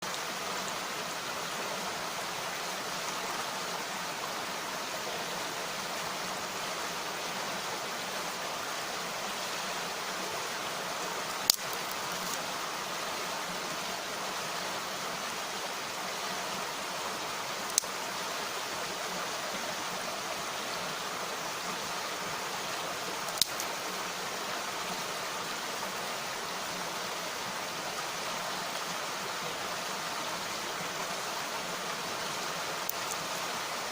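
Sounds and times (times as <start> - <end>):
mountain stream rushing: 0.0 - 33.9
campfire wood popping: 11.4 - 12.4, 23.3 - 23.7.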